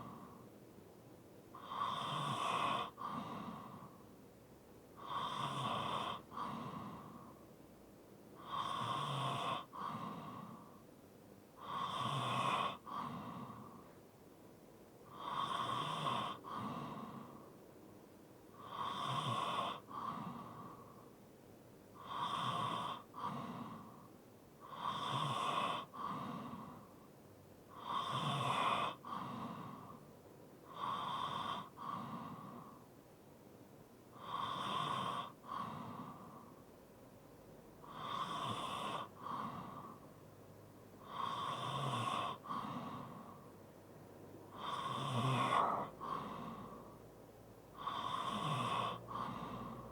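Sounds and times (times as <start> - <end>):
light snoring: 1.5 - 4.2, 5.0 - 7.4, 8.4 - 10.8, 11.6 - 14.0, 15.0 - 17.6, 18.5 - 21.2, 22.0 - 27.1, 27.7 - 32.9, 34.1 - 36.7, 37.8 - 40.2, 41.0 - 43.6, 44.5 - 47.0, 47.7 - 49.9
person breathing heavily: 44.5 - 47.0, 48.9 - 49.9.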